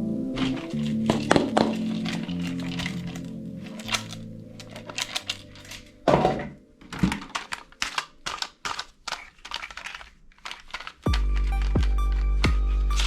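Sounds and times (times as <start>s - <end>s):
plastic toy gun clacking: 0.4s - 6.0s, 6.8s - 11.1s.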